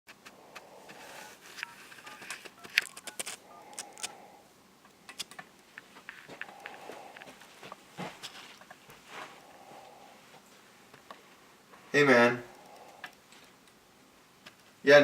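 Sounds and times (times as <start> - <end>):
small clicks: 1.5 - 4.2, 4.8 - 7.3
telephone keypad beeps: 1.6 - 4.2.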